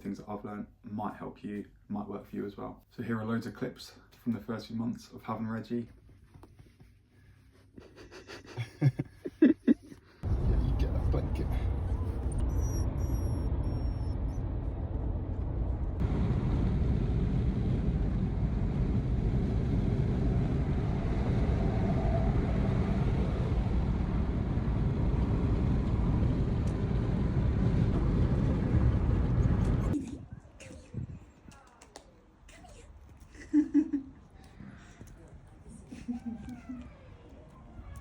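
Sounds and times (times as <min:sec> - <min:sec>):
low rumbling noise: 0:10.2 - 0:31.2
faint high electronic tones: 0:11.9 - 0:14.4.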